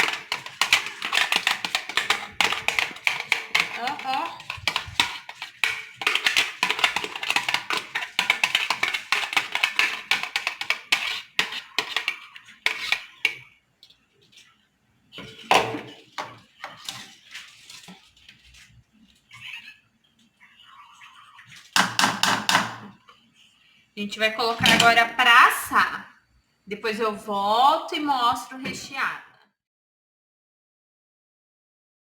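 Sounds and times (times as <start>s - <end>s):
utensil scraping against a dish: 0.0s - 14.6s, 15.2s - 19.8s.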